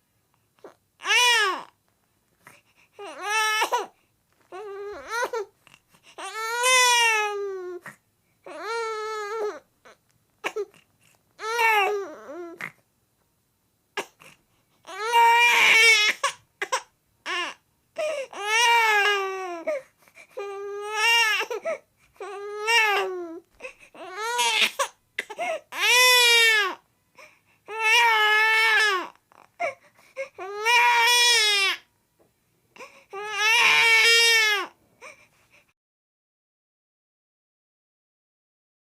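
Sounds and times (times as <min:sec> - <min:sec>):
baby crying: 0:00.6 - 0:01.8, 0:03.0 - 0:05.5, 0:06.2 - 0:10.8, 0:11.4 - 0:12.8, 0:14.0 - 0:31.9, 0:32.8 - 0:35.2.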